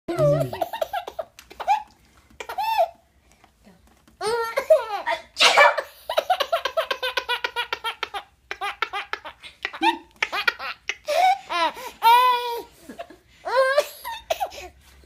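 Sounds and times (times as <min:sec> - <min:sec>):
baby laughing: 0:00.1 - 0:03.0, 0:04.2 - 0:12.7
girl sneezing: 0:05.4 - 0:05.9.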